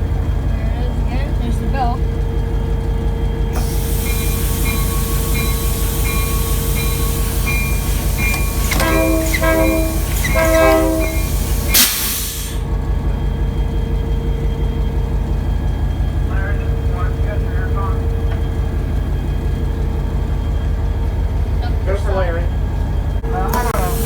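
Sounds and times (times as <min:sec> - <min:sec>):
locomotive bell ringing: 0:00.0 - 0:12.2
locomotive engine idling: 0:00.0 - 0:24.0
air hissing: 0:03.6 - 0:12.7, 0:23.5 - 0:24.0
air horn blasts: 0:08.4 - 0:11.9.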